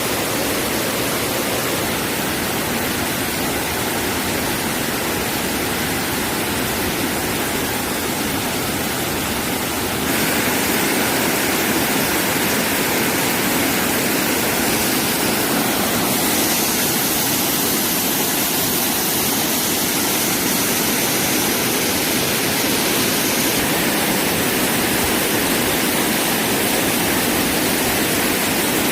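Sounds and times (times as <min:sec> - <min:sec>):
stream water rushing: 0:00.0 - 0:28.9.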